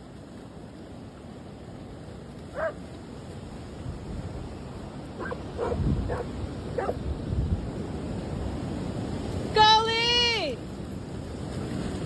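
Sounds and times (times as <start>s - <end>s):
wind rumble on microphone: 0.0s - 12.0s
dog barking: 2.5s - 2.8s, 5.2s - 7.0s.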